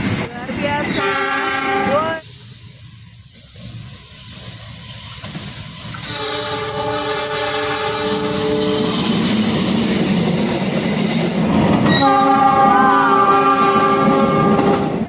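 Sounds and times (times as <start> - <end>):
train rumble: 0.0 - 15.0
train horn blasts: 0.9 - 2.2, 5.9 - 9.2, 11.8 - 15.0.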